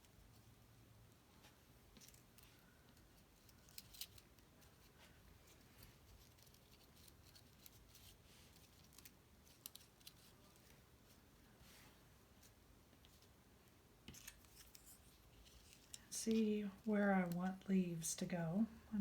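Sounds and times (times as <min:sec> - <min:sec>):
paper ticks and rustles: 0:01.4 - 0:11.2, 0:14.0 - 0:16.4.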